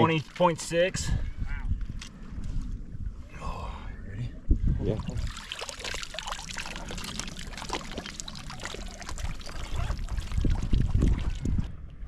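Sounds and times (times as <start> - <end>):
water splashing and trickling: 0.0 - 1.3, 4.8 - 12.0.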